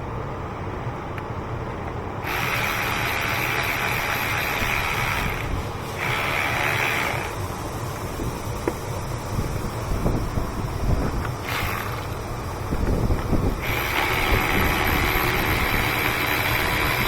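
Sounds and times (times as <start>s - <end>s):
steady low hum: 0.0s - 17.0s
ratchet wrench spinning: 2.2s - 9.7s, 11.2s - 17.0s.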